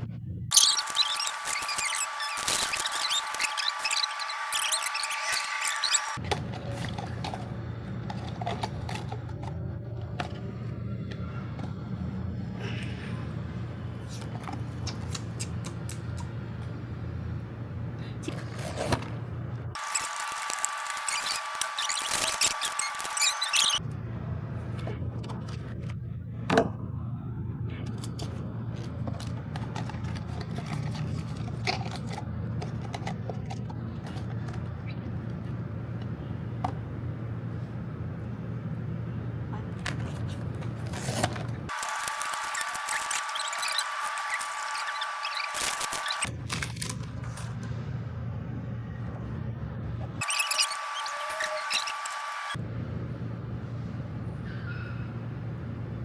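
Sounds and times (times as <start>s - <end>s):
steady low hum: 0.0s - 50.2s, 50.8s - 56.0s
packaging clicks and rustles: 0.5s - 10.4s, 19.8s - 23.8s, 39.8s - 47.5s.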